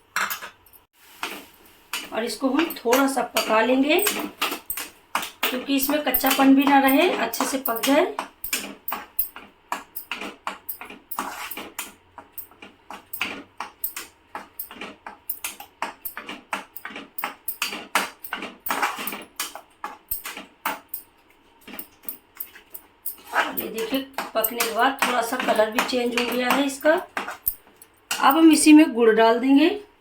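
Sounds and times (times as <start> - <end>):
spatula scraping a pan: 10.5 - 11.9, 16.2 - 20.4, 23.1 - 27.5.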